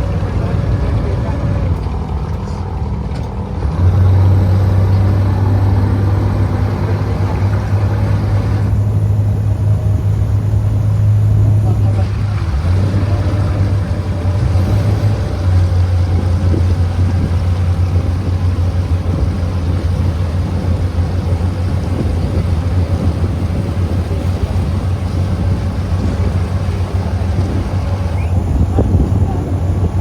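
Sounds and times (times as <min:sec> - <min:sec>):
boat diesel engine droning: 0:00.0 - 0:30.0
water noise: 0:00.0 - 0:30.0
wind noise: 0:07.3 - 0:30.0.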